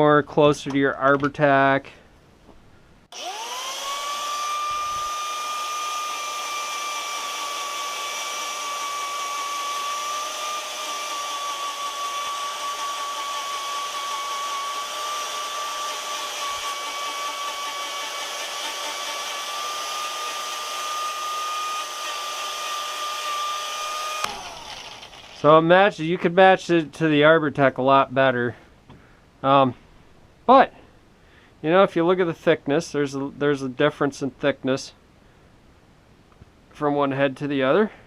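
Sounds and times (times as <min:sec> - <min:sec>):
power-carving tool whining: 0:03.1 - 0:25.5.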